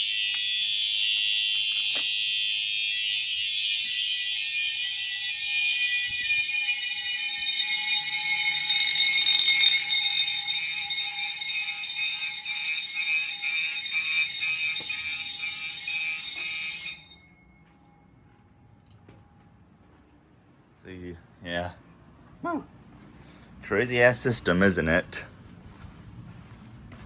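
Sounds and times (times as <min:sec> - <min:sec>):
pulsed alarm tone: 0:00.0 - 0:17.8
fire alarm ringing: 0:00.0 - 0:18.0.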